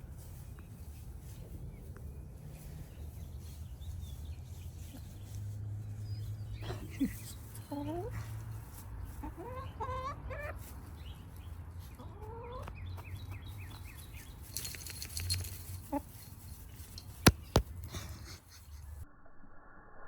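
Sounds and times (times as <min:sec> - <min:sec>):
sharp taps: 0:16.9 - 0:17.9.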